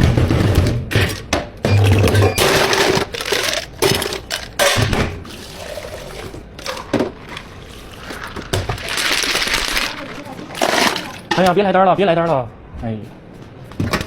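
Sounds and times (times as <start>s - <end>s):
liquid pouring into a cup: 5.3s - 10.8s.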